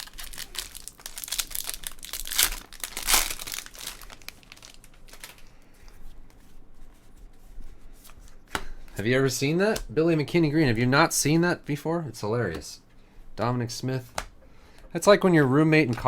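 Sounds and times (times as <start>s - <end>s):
plastic wrapper crinkling and tearing: 0.0s - 5.6s.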